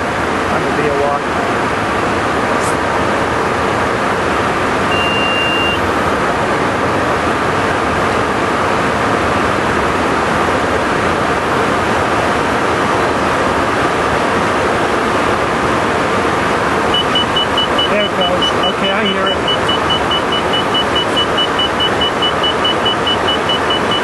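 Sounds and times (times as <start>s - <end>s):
jet engines humming: 0.0s - 24.0s
high beep: 4.9s - 5.8s, 16.9s - 24.0s.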